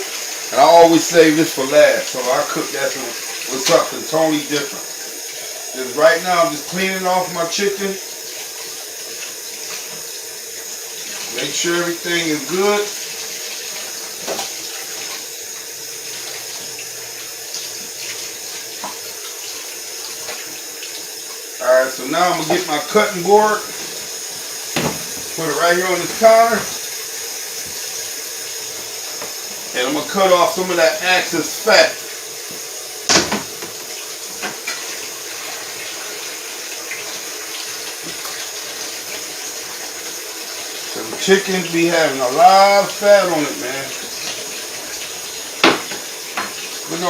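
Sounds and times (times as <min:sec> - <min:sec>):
faucet running into sink: 0:00.0 - 0:47.0
tap running into sink: 0:12.3 - 0:15.3, 0:17.5 - 0:21.5, 0:23.6 - 0:26.9, 0:28.7 - 0:29.5, 0:32.4 - 0:36.0, 0:36.9 - 0:39.2, 0:44.0 - 0:46.9.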